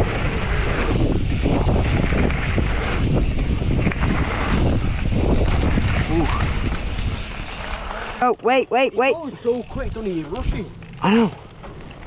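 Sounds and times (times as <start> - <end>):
wind buffeting microphone: 0.0 - 7.9
bike tyres rushing on trail: 0.0 - 8.2, 9.3 - 12.0.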